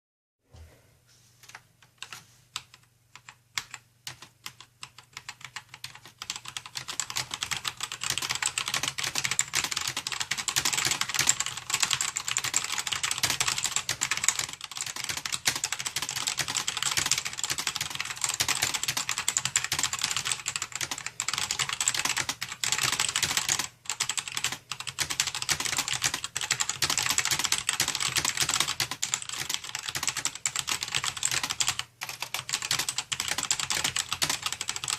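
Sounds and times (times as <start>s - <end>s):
fast mechanical keyboard typing: 2.0s - 34.9s.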